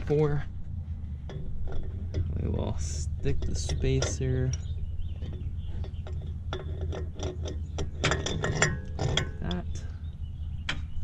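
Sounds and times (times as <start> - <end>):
steady low hum: 0.0 - 11.0
metal clinks and clicks: 3.4 - 9.6.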